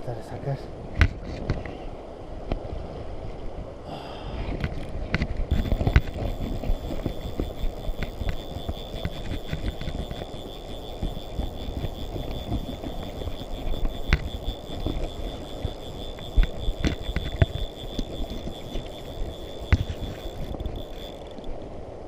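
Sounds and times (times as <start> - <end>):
thin high whine: 5.5 - 21.6.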